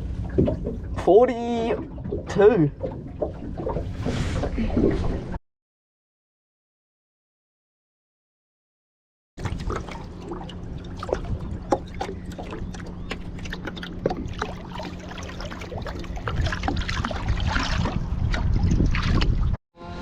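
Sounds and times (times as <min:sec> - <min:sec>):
water splashing against boat: 0:00.0 - 0:05.4, 0:09.4 - 0:19.6
steady low hum: 0:09.4 - 0:17.0.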